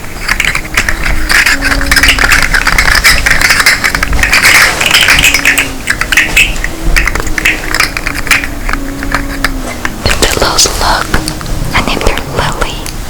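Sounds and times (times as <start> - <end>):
fidget toy clicking and rattling: 0.0 - 12.3.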